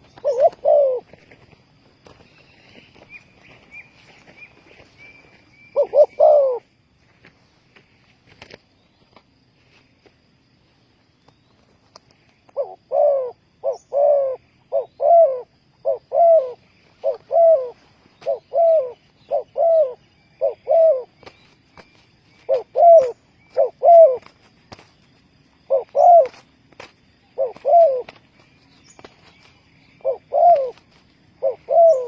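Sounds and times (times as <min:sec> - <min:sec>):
dove cooing: 0:00.0 - 0:02.2, 0:02.9 - 0:06.7, 0:12.5 - 0:24.9, 0:25.6 - 0:26.5, 0:27.2 - 0:32.0.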